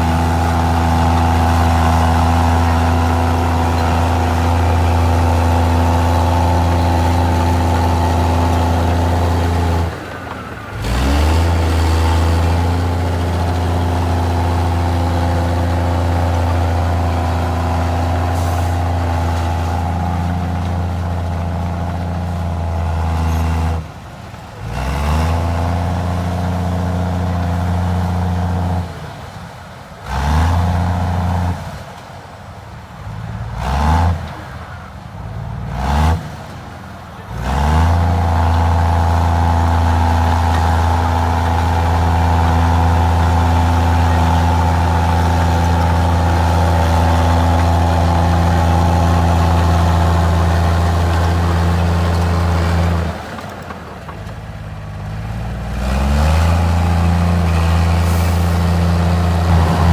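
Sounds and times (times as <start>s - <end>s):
bulldozer diesel engine working: 0.0s - 31.9s, 32.8s - 59.9s.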